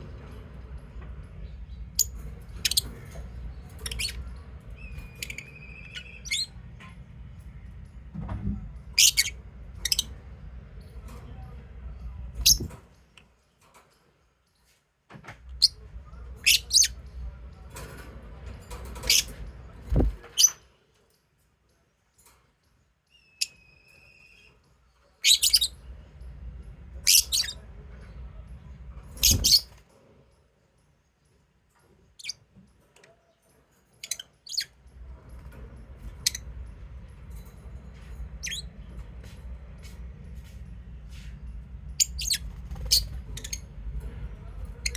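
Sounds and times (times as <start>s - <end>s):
birds chirping: 0.0s - 14.8s, 15.4s - 44.9s
lovebirds chirping: 1.4s - 6.7s, 8.9s - 10.3s, 12.2s - 12.8s, 23.0s - 27.6s, 29.2s - 29.8s, 33.2s - 34.8s, 38.0s - 38.8s, 41.9s - 43.7s
low background rumble: 25.4s - 29.8s, 34.8s - 44.9s.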